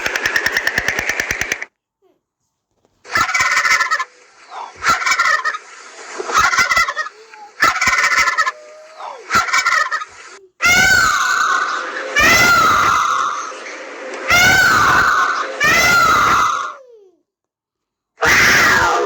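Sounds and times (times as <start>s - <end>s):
wavering sliding animal call: 3.1s - 17.1s.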